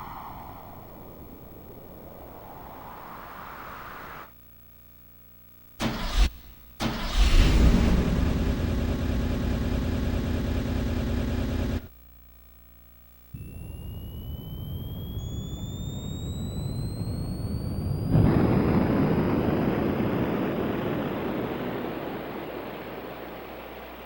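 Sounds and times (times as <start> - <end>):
hiss with rising tones: 0.0 - 4.3, 13.4 - 18.4
car engine starting sound effect: 5.8 - 11.9.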